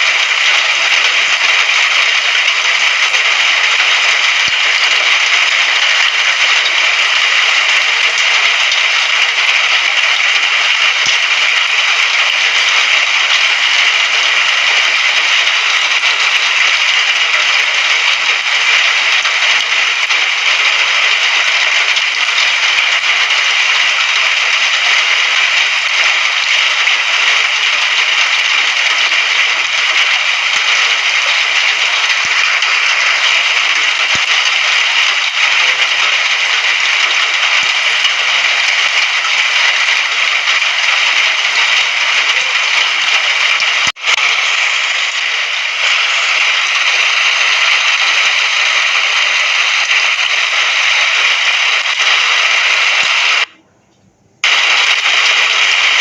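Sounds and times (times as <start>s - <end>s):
steady rain: 0.0s - 53.6s, 54.4s - 56.0s.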